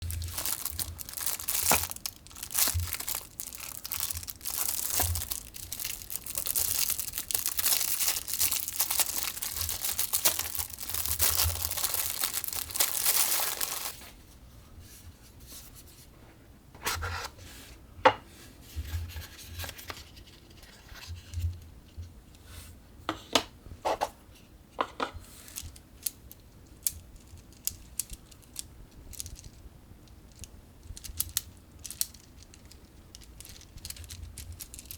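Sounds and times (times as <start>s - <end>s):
packaging tearing and crinkling: 0.0s - 14.0s.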